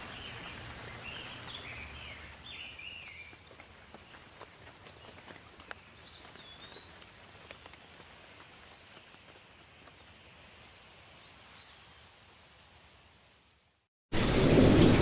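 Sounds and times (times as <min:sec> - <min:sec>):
light rain falling: 0:00.0 - 0:15.0.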